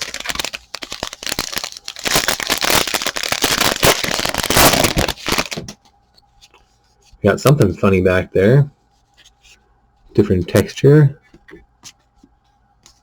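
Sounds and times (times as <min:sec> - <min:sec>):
foil wrapper crinkling: 0:00.0 - 0:05.8.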